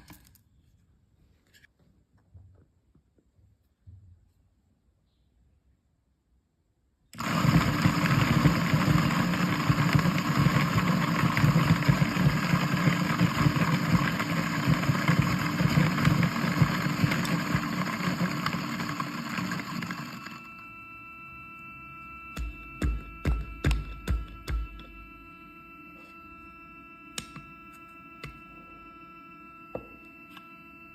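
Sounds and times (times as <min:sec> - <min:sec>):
coffee grinder motor running: 0:07.2 - 0:30.9.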